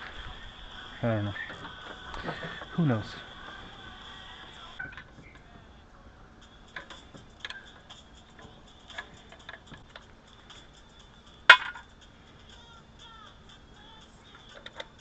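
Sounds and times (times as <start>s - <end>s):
hand tools clinking: 6.4s - 15.0s
sharp metal clank: 11.5s - 11.9s.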